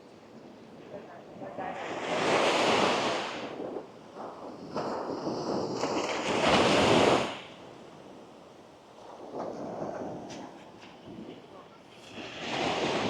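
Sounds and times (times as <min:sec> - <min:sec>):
waves washing on sand: 0:01.4 - 0:08.2, 0:12.0 - 0:13.0.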